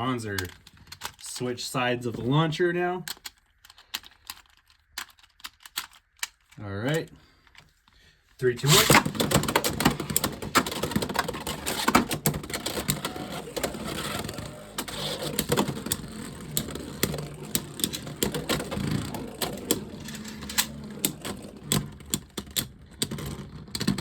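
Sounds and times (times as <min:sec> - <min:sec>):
spinning tops whirring and scraping: 0:08.6 - 0:23.4.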